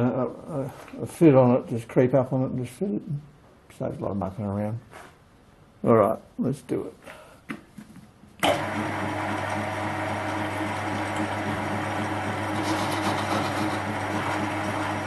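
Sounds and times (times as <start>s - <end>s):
metal lathe humming: 8.4s - 15.0s.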